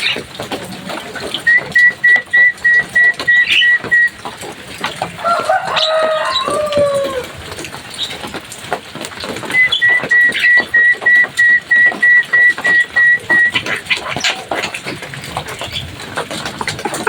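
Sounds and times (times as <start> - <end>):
rapid clicking bird chatter: 0.0 - 17.0
bird whistling short notes: 1.5 - 4.1, 9.6 - 13.6.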